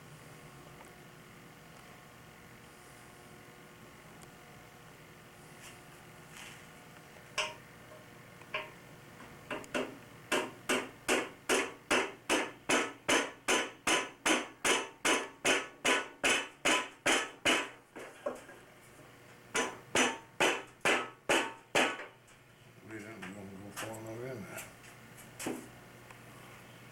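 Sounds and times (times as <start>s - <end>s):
hammer striking wood: 9.5s - 17.8s, 19.6s - 22.1s.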